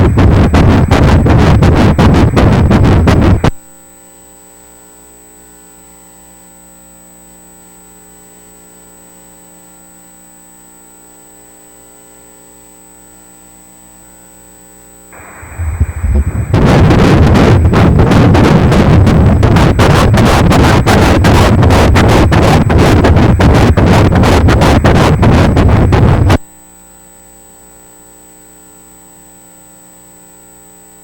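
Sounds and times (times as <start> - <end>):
hiss: 15.2 - 18.0
rapid doppler pulsing: 15.2 - 22.8
steady electronic hum: 15.2 - 26.4.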